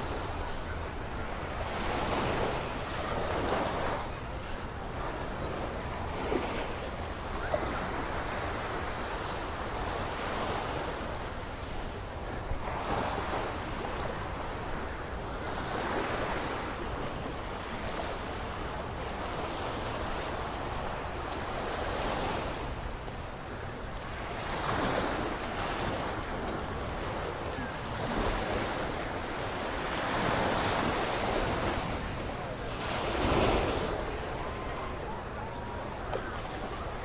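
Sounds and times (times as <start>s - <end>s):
ocean surf washing onto beach: 0.0s - 37.0s
wind rumbling on microphone: 0.0s - 37.0s.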